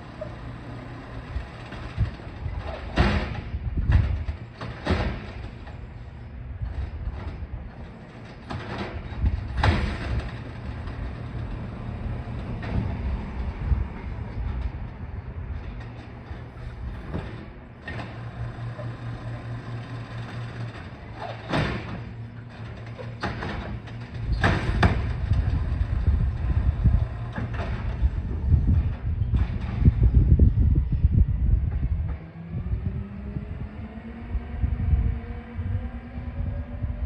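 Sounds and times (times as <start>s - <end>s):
garbage truck engine running: 0.0s - 36.0s
sharp bangs and knocks: 0.6s - 5.9s, 8.2s - 13.1s, 15.6s - 30.0s.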